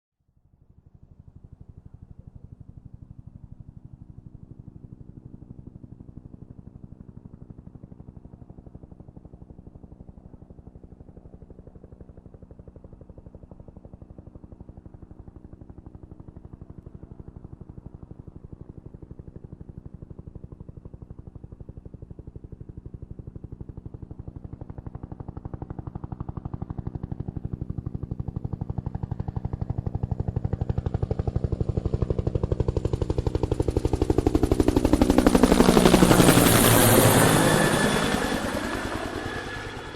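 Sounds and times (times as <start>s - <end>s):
helicopter rotor blades chopping: 23.7s - 39.9s.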